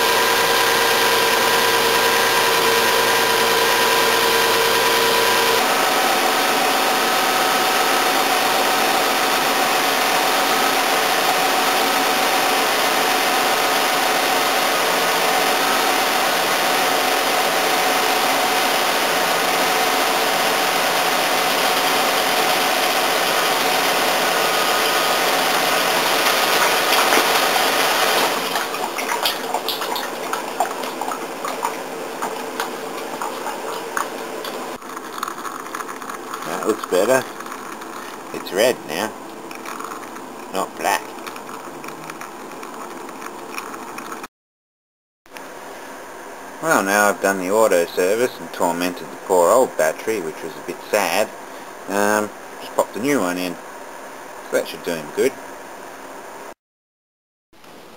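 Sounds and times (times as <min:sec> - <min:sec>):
car engine running: 0:00.0 - 0:44.2.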